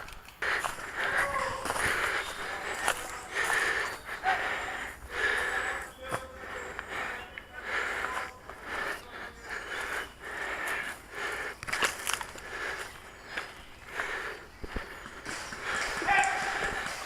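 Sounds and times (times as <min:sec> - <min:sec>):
person breathing heavily: 0:00.0 - 0:17.0.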